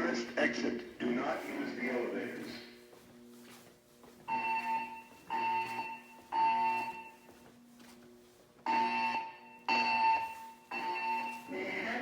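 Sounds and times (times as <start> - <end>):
fire alarm beeps: 4.3 - 7.4, 8.6 - 12.0.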